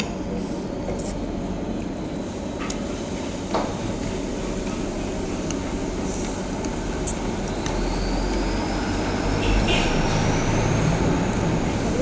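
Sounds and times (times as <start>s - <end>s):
low rumbling background noise: 0.0s - 12.0s.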